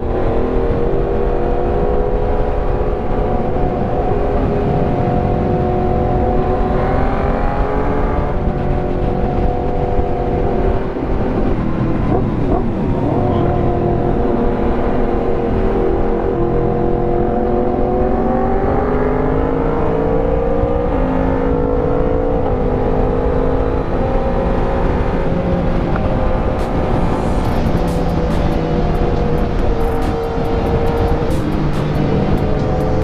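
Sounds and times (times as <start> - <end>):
wind rumble: 0.0 - 33.0
motorcycle engine running: 3.1 - 18.3, 24.0 - 33.0.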